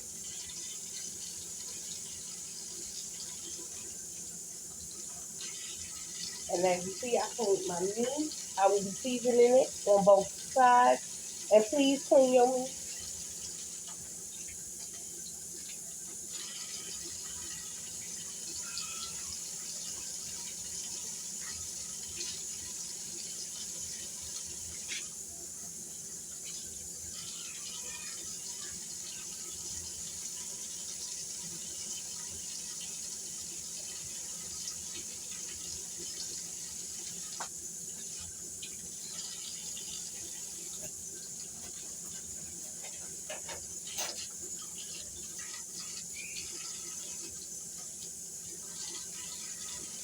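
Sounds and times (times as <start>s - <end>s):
tap running into sink: 40.7s - 44.5s.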